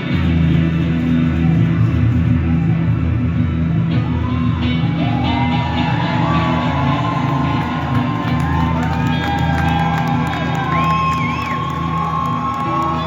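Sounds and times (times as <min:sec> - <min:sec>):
audience shouting and whooping: 0:03.9 - 0:13.0.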